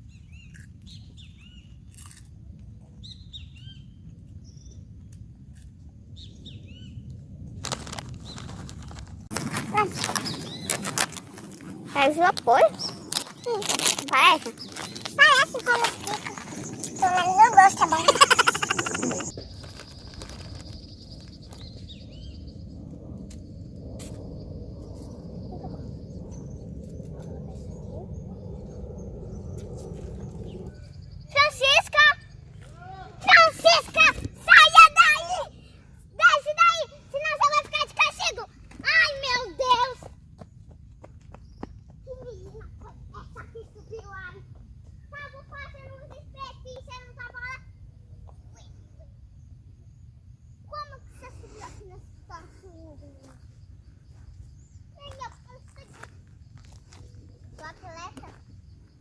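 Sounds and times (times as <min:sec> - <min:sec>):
small bird chirps: 0:00.0 - 0:02.2, 0:10.2 - 0:10.8, 0:14.6 - 0:31.6
small birds chirping: 0:00.0 - 0:02.2, 0:03.0 - 0:05.2, 0:06.1 - 0:11.2, 0:12.0 - 0:59.0
low rumble: 0:02.4 - 0:31.4
insect-like buzz: 0:09.7 - 0:32.7.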